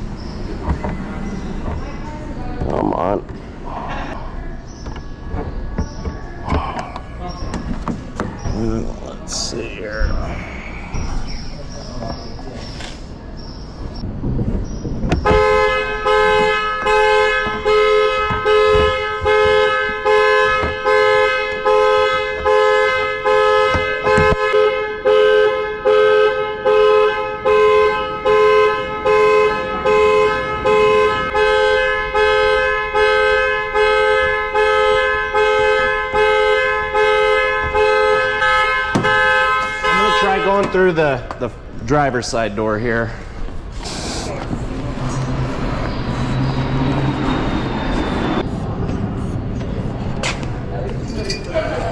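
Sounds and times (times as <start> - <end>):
car horn honking: 15.2 - 41.2.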